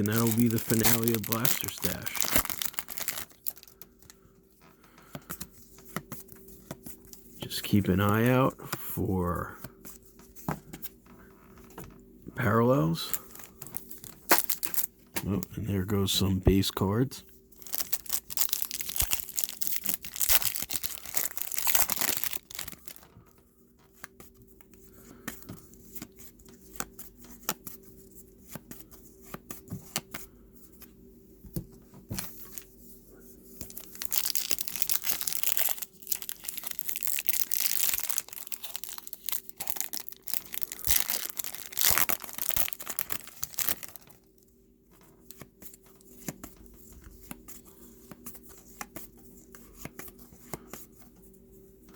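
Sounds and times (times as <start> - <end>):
wrappers tearing and crinkling: 0.0 - 4.1, 13.2 - 15.5, 17.6 - 23.1, 33.6 - 44.2.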